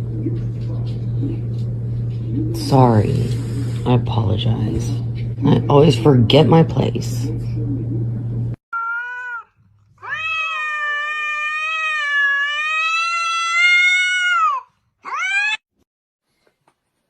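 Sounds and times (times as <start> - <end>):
cat meowing: 8.8 - 15.6.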